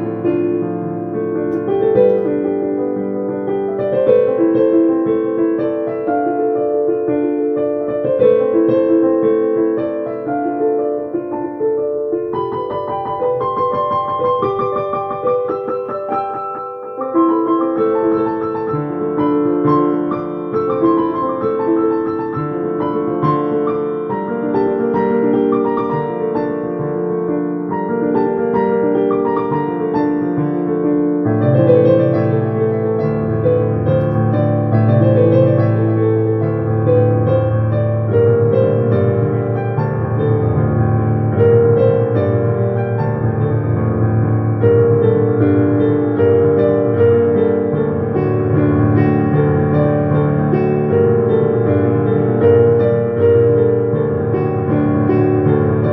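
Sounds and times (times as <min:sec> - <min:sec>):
piano bass line: 0:00.0 - 0:55.9
slow piano melody: 0:00.0 - 0:55.9.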